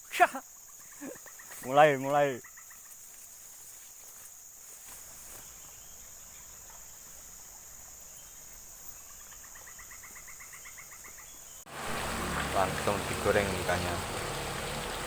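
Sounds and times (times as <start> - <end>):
insect chirring: 0.0 - 13.4
loud hissing noise: 11.7 - 15.0.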